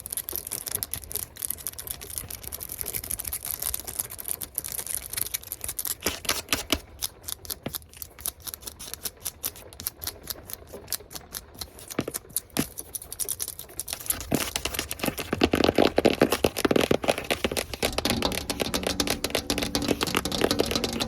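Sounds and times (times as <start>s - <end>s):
fingernails tapping and scratching: 10.9s - 21.0s.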